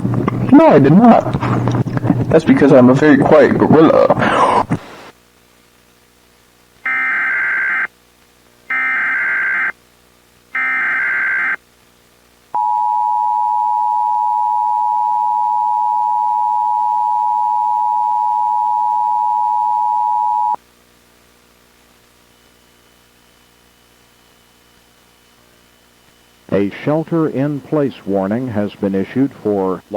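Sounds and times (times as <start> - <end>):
digital data tone bursts: 10.6 - 11.6
two-tone alert signal: 12.6 - 20.6.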